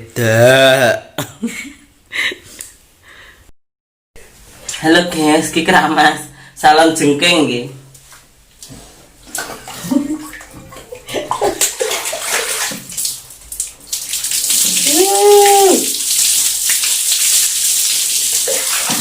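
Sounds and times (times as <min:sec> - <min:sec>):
drawn-out vocal sound: 0:00.0 - 0:01.3
running water splashing: 0:09.3 - 0:19.0.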